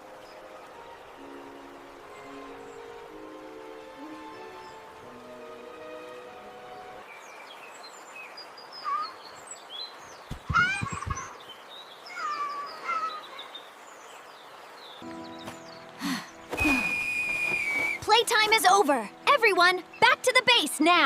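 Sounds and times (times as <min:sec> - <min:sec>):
small birds chirping: 0:06.6 - 0:21.0
loud pitched bird calls: 0:08.6 - 0:14.0.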